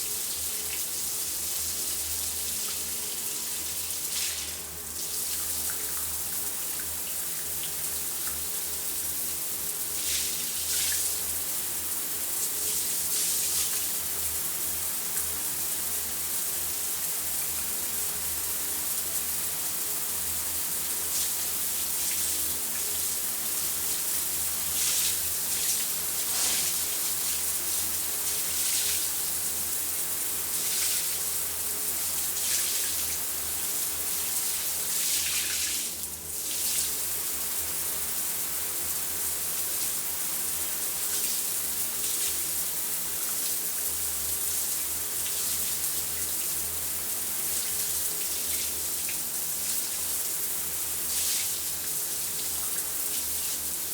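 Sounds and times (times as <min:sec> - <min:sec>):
shower spray splashing: 0:09.9 - 0:11.3, 0:12.4 - 0:14.4, 0:20.6 - 0:37.8, 0:47.4 - 0:53.8.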